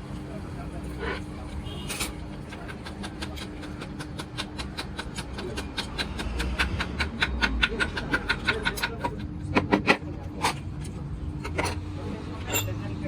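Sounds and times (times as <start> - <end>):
rapid metallic tapping: 2.3 - 9.0.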